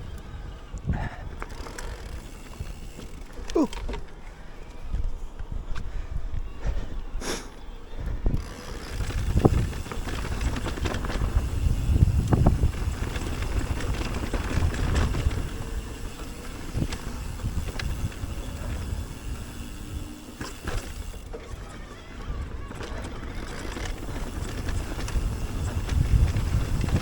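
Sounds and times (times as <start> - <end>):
bike rattling and knocking: 1.0 - 4.2, 8.3 - 27.0
tyres rumbling: 1.0 - 4.4, 8.0 - 27.0
wind on microphone: 7.9 - 21.2, 23.4 - 27.0.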